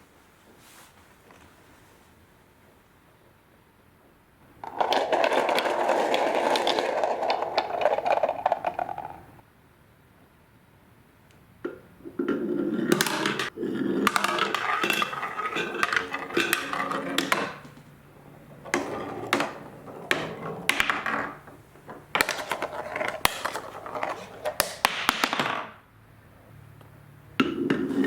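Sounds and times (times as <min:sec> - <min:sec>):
marbles clicking and knocking: 0:04.6 - 0:09.4, 0:11.7 - 0:25.6
marbles rolling on wooden track: 0:04.6 - 0:09.4, 0:12.1 - 0:25.8.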